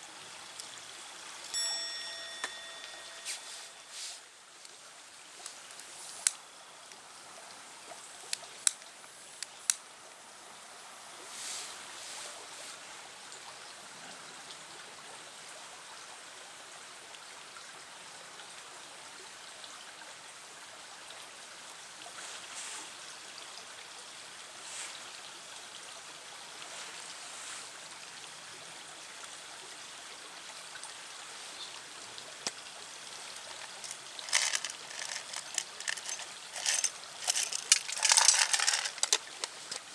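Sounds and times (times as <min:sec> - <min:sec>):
steady hiss: 0:00.0 - 0:12.9
sharp clicks: 0:33.4 - 0:39.9.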